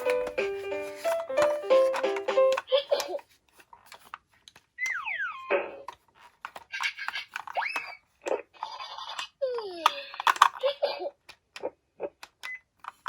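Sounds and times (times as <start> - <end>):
falling cartoon whistle glides: 4.8 - 5.5
rising cartoon whistle: 4.8 - 5.6.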